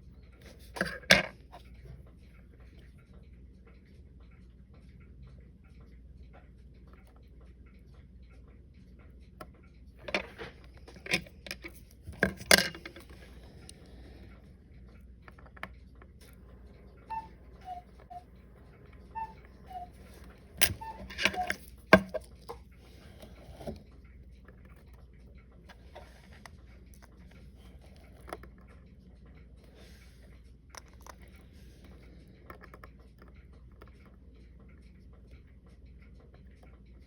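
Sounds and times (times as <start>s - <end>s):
metal tools clicking and tapping: 10.0s - 13.8s, 17.1s - 23.8s.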